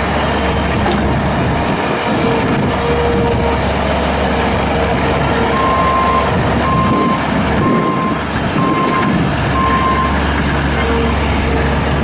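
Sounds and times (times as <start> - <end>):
diesel engine running: 0.0 - 12.0
backup alarm beeping: 5.6 - 10.2.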